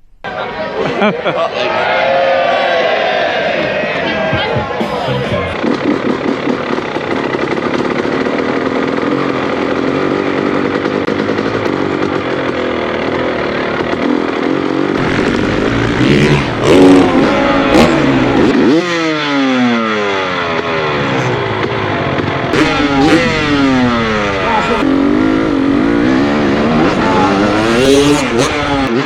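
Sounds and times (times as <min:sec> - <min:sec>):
motocross bike engines: 0:00.2 - 0:29.0
sharp throttle blips: 0:15.0 - 0:19.0, 0:22.5 - 0:29.0.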